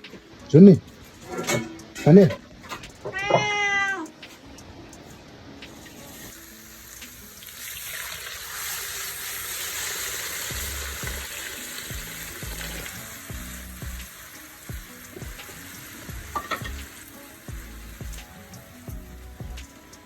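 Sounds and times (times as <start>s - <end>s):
fish sizzling in hot oil: 5.8s - 20.0s.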